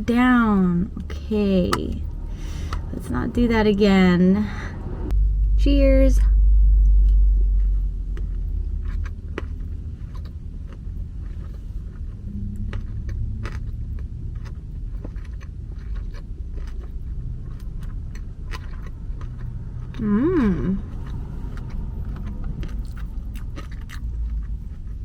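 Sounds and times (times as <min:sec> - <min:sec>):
low background rumble: 0:00.0 - 0:25.0
close-up chewing: 0:07.5 - 0:25.0
person humming mmm: 0:12.3 - 0:12.8, 0:20.0 - 0:21.0.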